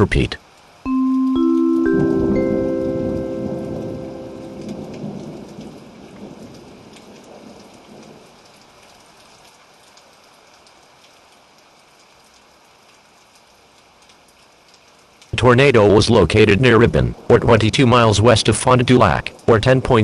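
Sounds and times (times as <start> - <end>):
steady rain: 0.0 - 20.0
low thunder rumble: 3.1 - 8.2.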